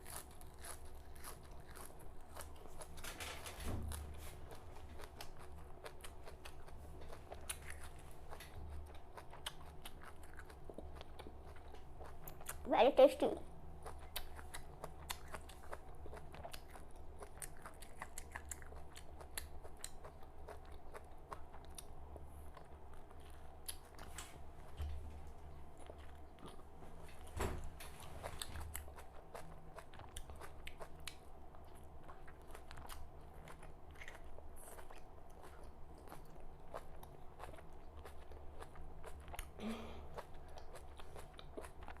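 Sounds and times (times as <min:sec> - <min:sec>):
chewing crunchy leaves: 0:00.0 - 0:03.0, 0:04.3 - 0:12.6, 0:13.8 - 0:24.2, 0:28.1 - 0:39.6.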